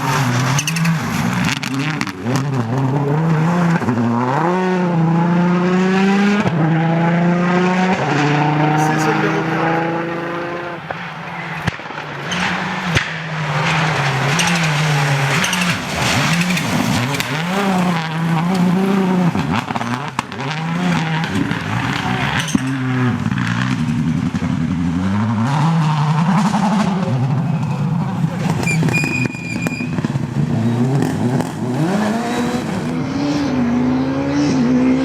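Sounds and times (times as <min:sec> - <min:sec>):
rally car engine revving: 0:00.0 - 0:35.0.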